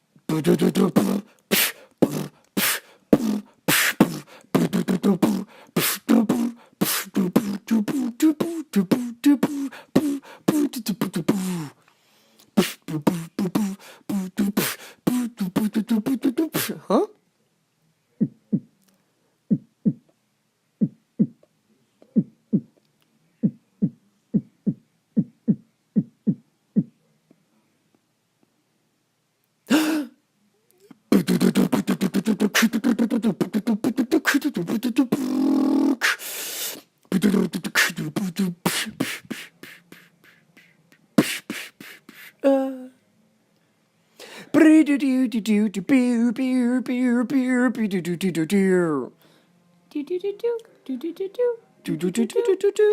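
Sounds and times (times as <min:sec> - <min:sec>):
person beatboxing: 0:00.3 - 0:11.8, 0:12.6 - 0:16.9, 0:18.2 - 0:18.7, 0:19.5 - 0:20.1, 0:22.0 - 0:22.8, 0:31.1 - 0:42.8, 0:44.5 - 0:49.0, 0:50.0 - 0:52.9.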